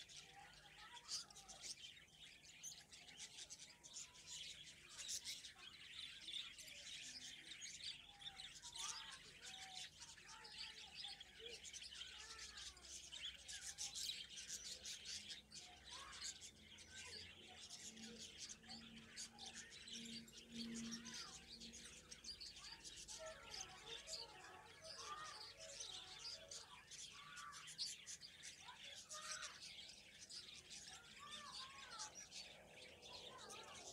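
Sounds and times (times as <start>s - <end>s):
finches chirping and twittering: 0.0s - 33.9s.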